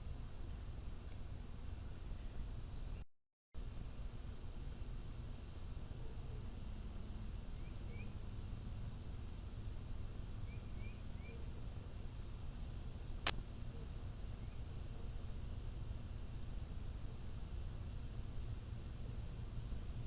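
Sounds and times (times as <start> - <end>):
high-pitched insect drone: 3.7 - 20.0
faint bird chirps: 7.5 - 8.2, 10.4 - 11.6, 13.7 - 14.8.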